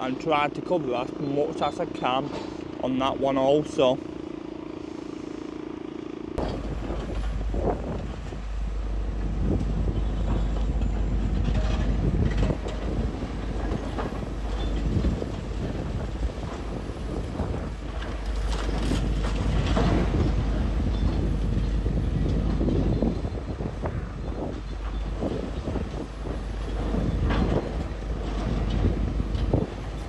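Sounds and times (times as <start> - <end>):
street traffic noise: 3.8 - 30.0
wind rumble on microphone: 6.4 - 30.0.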